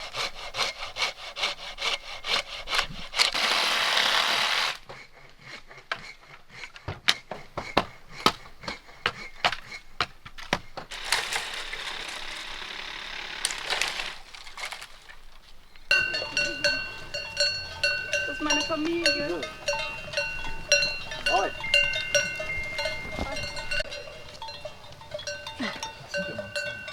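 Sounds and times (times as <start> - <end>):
hand saw cutting wood: 0.0 - 15.3
wood knocking and cracking: 6.8 - 15.9
livestock bells ringing: 15.9 - 26.9.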